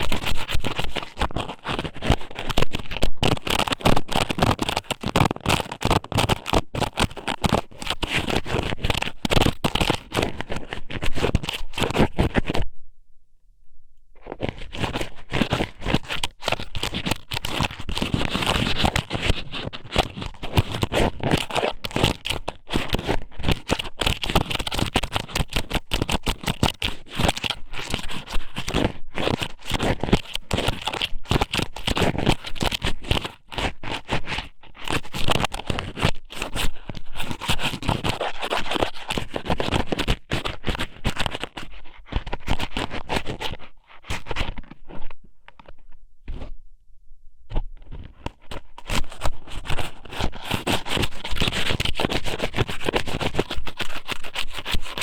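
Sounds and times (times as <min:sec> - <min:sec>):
dried squid scratching and rustling: 0:00.0 - 0:12.7, 0:14.2 - 0:46.5, 0:47.8 - 0:55.0.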